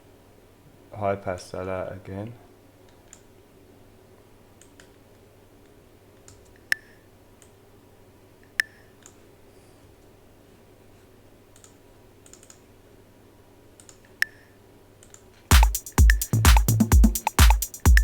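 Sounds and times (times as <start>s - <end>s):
computer mouse and keyboard clicks: 11.6s - 12.6s, 13.8s - 15.2s.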